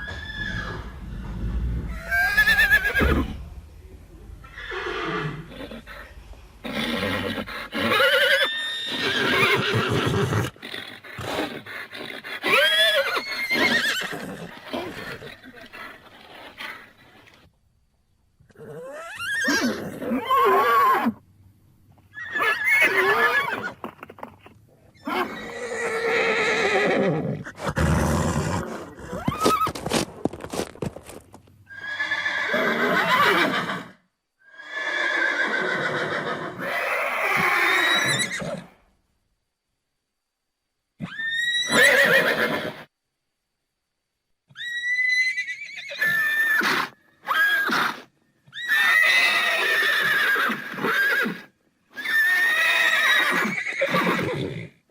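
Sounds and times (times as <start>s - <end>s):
horses neighing: 0.0s - 3.4s, 4.4s - 17.4s, 31.7s - 38.7s, 41.3s - 42.9s, 45.1s - 54.8s.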